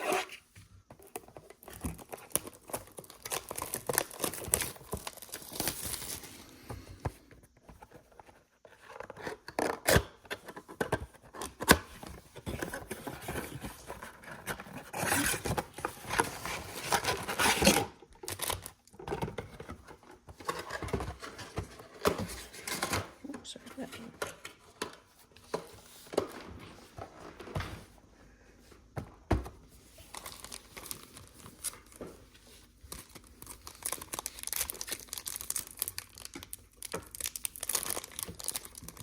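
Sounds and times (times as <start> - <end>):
cardboard and foil tearing: 0.0 - 0.4, 2.0 - 6.5, 14.8 - 18.7.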